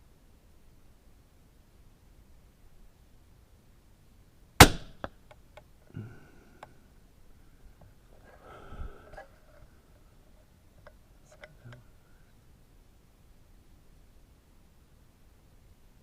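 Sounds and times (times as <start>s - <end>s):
rifle shot: 4.6s - 5.1s
faint clicks: 6.5s - 6.8s.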